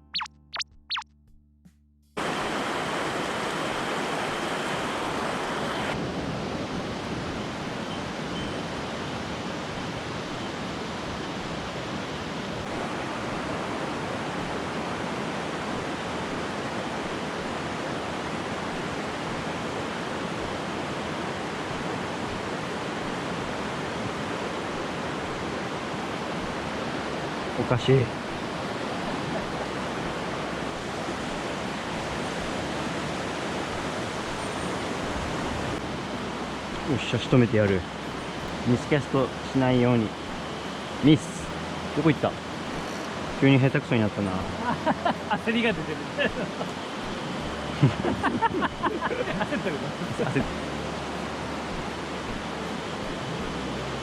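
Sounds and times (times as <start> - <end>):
mountain stream water rushing: 2.2 - 54.0.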